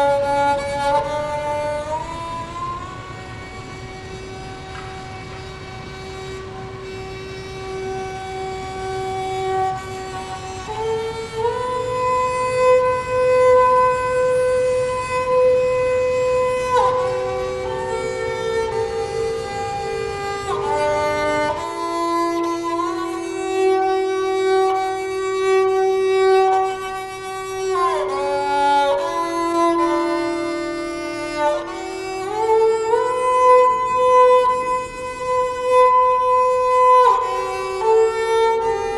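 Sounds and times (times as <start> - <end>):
low steady rumble: 0.0 - 23.4
slow instrumental music: 0.0 - 38.9.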